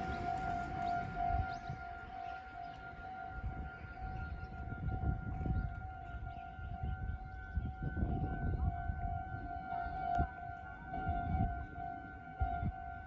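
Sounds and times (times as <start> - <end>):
low rumbling noise: 0.0 - 2.6
level crossing warning bell: 0.0 - 7.2.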